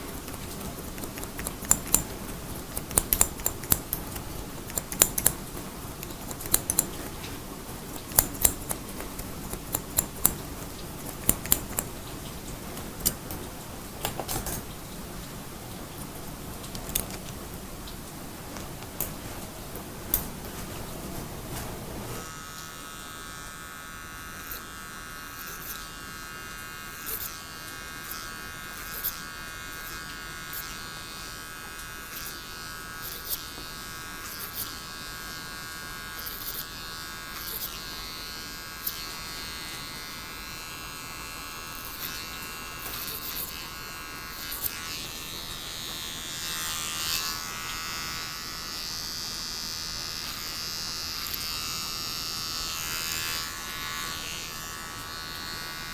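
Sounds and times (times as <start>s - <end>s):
electric hair clippers buzzing: 0.0s - 14.9s, 15.8s - 55.9s
light clicks: 0.1s - 14.7s.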